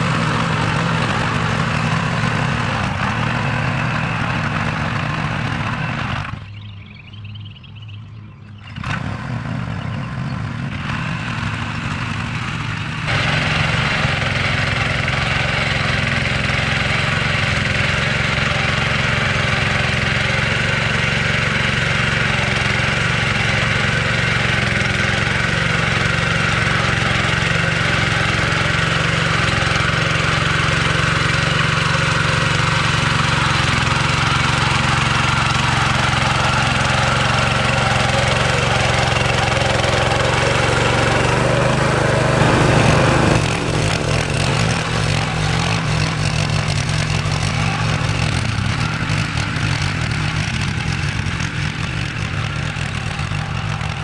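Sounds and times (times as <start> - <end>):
small gasoline engine running: 0.0 - 6.6, 8.6 - 54.0.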